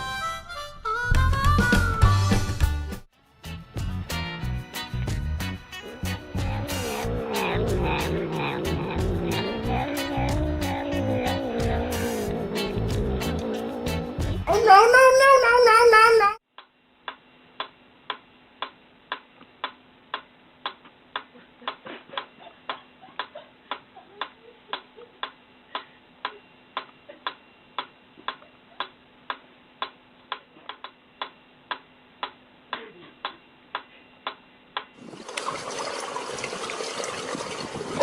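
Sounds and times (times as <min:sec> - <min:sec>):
regular sharp clicks: 0:16.6 - 0:21.8.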